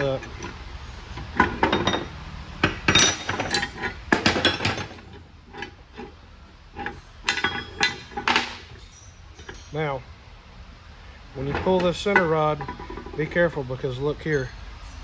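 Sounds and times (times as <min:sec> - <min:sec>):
metal rods clinking against housing: 0:00.0 - 0:06.1, 0:06.8 - 0:10.0, 0:11.4 - 0:13.6.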